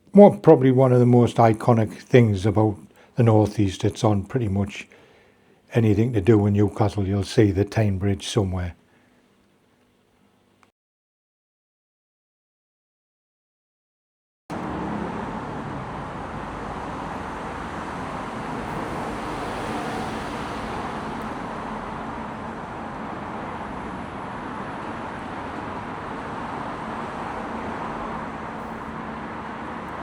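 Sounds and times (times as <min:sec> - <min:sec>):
road traffic rumble: 0:14.5 - 0:30.0.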